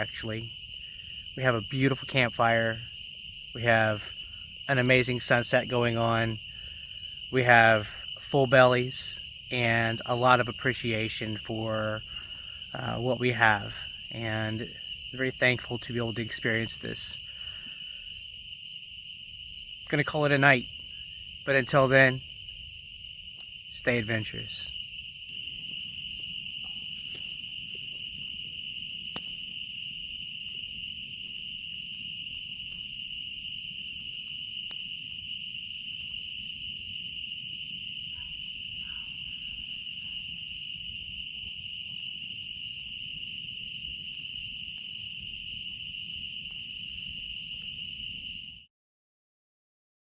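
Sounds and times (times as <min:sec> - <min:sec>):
crickets trilling: 0:00.0 - 0:48.7.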